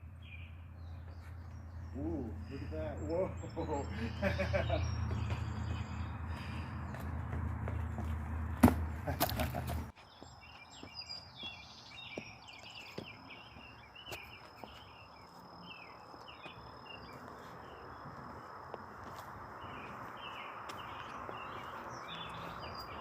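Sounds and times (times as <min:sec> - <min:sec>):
birds chirping: 0:00.0 - 0:23.0
soft footsteps: 0:05.2 - 0:23.0.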